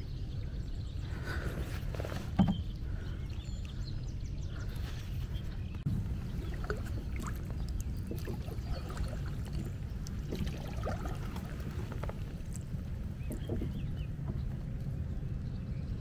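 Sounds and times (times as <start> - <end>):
low steady rumble: 0.0 - 16.0
paddle splashing water: 5.9 - 14.9.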